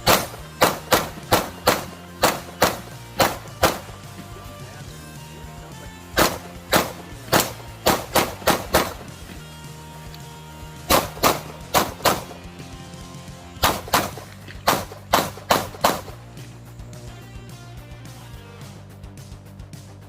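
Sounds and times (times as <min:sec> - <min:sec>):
pistol shots: 0:00.0 - 0:04.6, 0:06.1 - 0:09.4, 0:10.9 - 0:12.5, 0:13.6 - 0:16.2
background music: 0:00.0 - 0:20.0.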